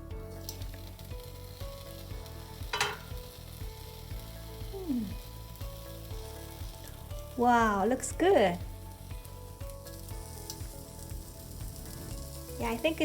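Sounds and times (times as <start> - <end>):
meatballs sizzling in frying pan: 0.0 - 13.0.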